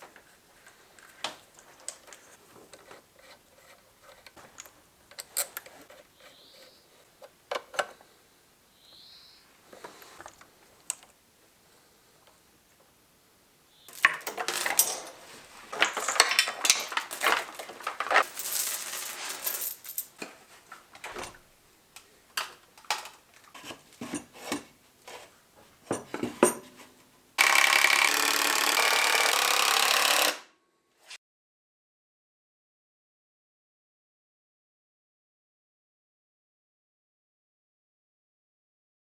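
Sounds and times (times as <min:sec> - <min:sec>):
metal tools clinking: 0:13.9 - 0:20.2.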